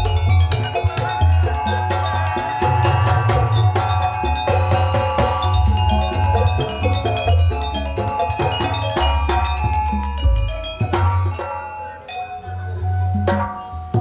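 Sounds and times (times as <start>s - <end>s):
deep bass drum: 0.0s - 11.4s
drums: 0.0s - 14.0s
mallet percussion: 0.0s - 14.0s.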